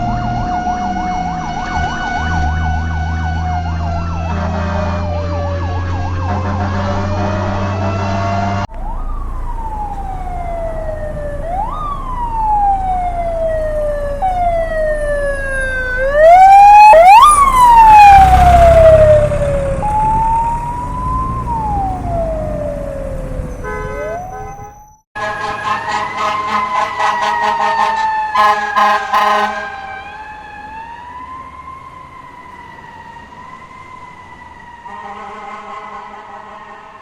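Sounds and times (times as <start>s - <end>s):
different siren: 0.0s - 37.0s
emergency vehicle siren wailing: 0.0s - 37.0s
low engine rumble: 8.5s - 24.5s.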